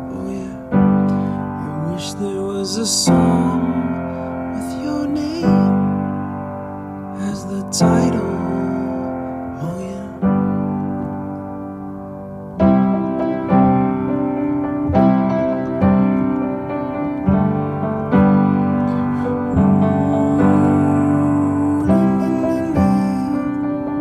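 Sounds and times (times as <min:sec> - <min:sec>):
piano playing chords: 0:00.0 - 0:24.0.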